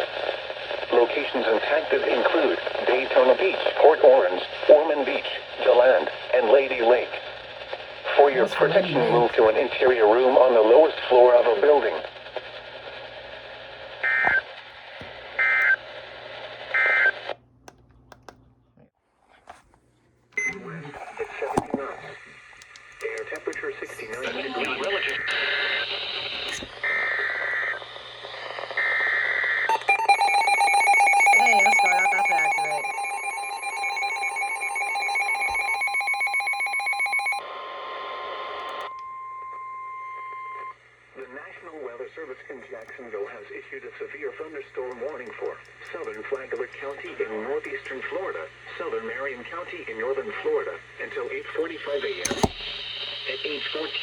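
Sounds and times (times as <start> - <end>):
radio hiss: 0.0 - 17.3, 21.0 - 30.5, 31.2 - 38.9, 40.6 - 54.0
steady warning tone: 29.7 - 37.4
warbling alarm beeps: 29.7 - 37.4.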